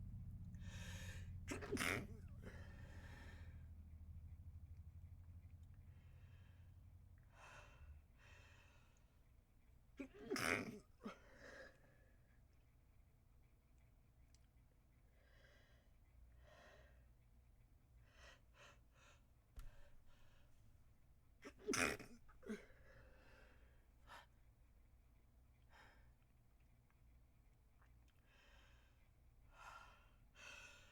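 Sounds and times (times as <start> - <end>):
quick breaths: 0.5 - 3.9, 28.2 - 30.9
muffled sneeze: 1.1 - 2.7, 10.0 - 11.2, 21.4 - 22.7.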